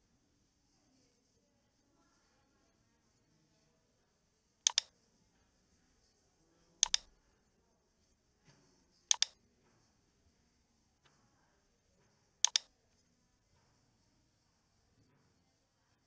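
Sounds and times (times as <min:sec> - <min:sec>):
computer mouse clicking: 0:04.7 - 0:04.9, 0:06.8 - 0:07.1, 0:09.1 - 0:09.4, 0:12.4 - 0:12.7.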